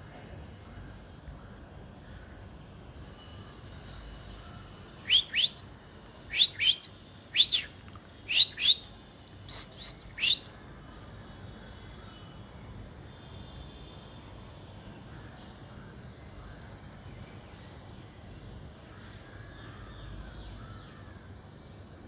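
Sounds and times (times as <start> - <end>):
kite shrill whistling calls: 5.1 - 5.6, 6.3 - 7.7, 8.3 - 8.8, 9.5 - 10.4.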